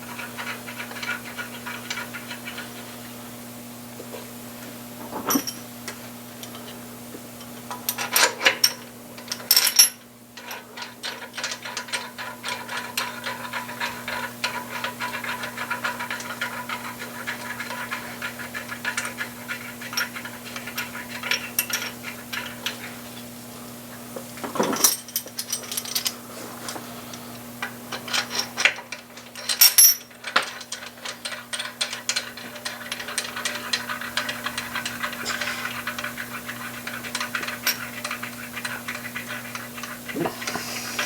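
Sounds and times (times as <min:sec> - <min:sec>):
metal tools clinking on metal: 0:05.3 - 0:05.6, 0:24.4 - 0:26.2, 0:29.4 - 0:36.1.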